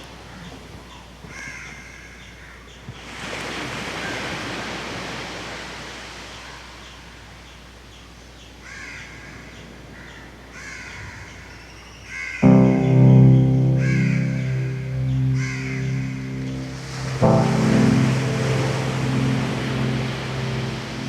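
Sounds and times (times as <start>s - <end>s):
rush of noise: 12.5s - 21.0s.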